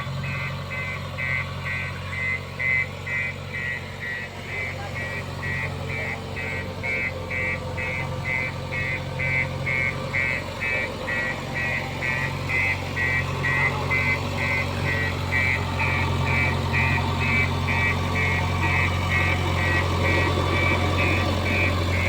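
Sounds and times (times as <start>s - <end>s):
diesel engine hum: 0.0s - 22.0s
reversing alarm beeping: 0.0s - 22.0s.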